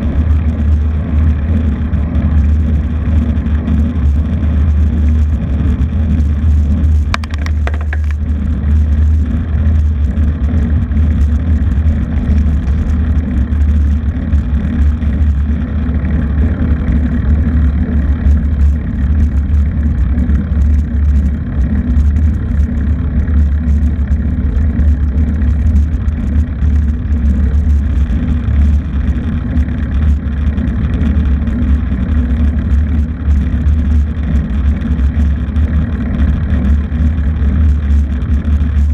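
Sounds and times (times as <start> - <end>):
vehicle engine running: 0.0 - 38.9
road noise: 7.0 - 8.6.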